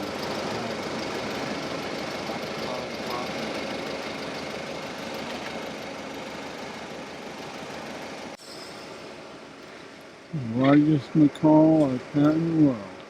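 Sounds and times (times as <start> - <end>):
engine idling: 0.0 - 8.4.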